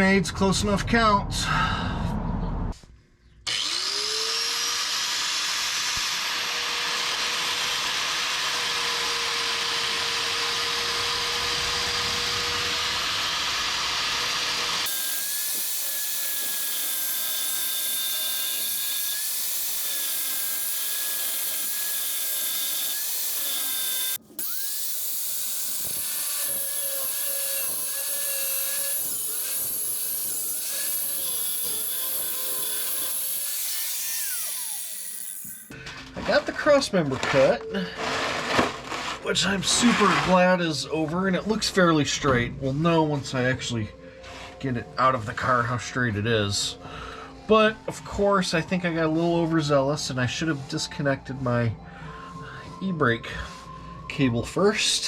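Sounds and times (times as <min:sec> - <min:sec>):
power tool cutting steel: 0:03.5 - 0:35.8.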